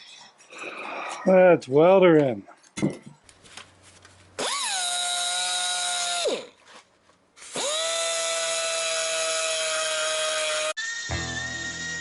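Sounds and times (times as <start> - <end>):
power tool motor whining: 7.4 - 12.0.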